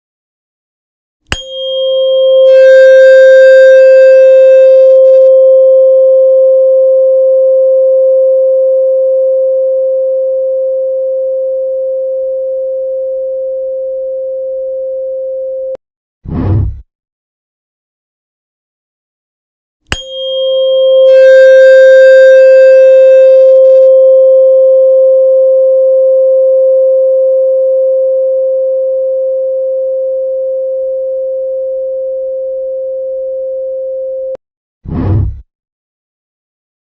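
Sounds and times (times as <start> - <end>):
pure tone: 1.3 - 15.8, 19.9 - 34.4.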